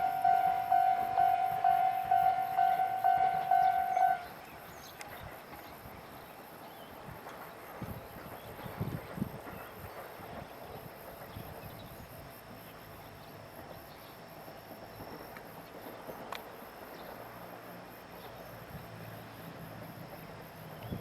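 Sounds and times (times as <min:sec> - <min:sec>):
insects chirping: 0:00.0 - 0:21.0.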